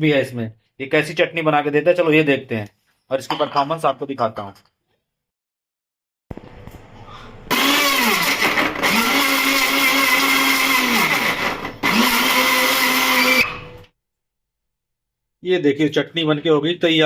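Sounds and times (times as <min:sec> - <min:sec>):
mixer grinder motor whining: 0:07.5 - 0:13.9.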